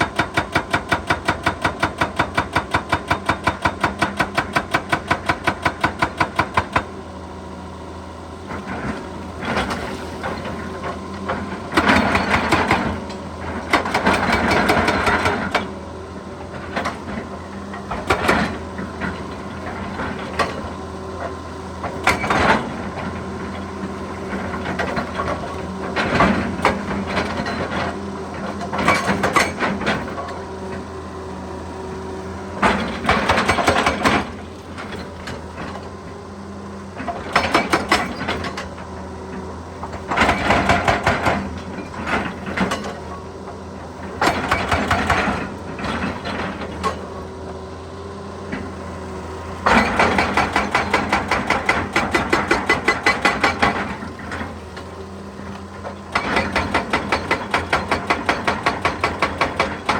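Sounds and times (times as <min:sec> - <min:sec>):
hydraulic breaker hammering: 0:00.0 - 0:06.9, 0:11.4 - 0:15.8, 0:32.6 - 0:35.4, 0:44.1 - 0:47.1, 0:49.6 - 0:54.9, 0:55.9 - 0:59.9
diesel engine running: 0:00.1 - 0:59.9.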